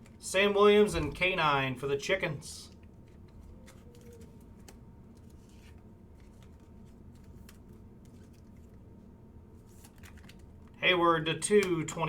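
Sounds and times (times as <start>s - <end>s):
low steady hum: 0.0s - 12.0s
handling rustles: 2.7s - 9.0s.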